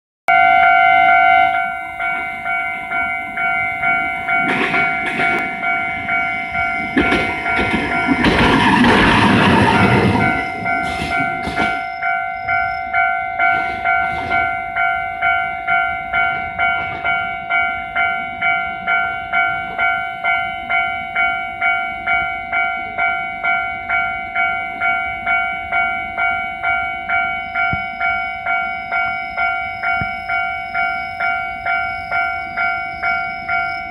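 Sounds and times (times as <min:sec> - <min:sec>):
level-crossing warning bell: 0:00.3 - 0:33.9
train wheels clicking over rail joints: 0:02.2 - 0:15.4.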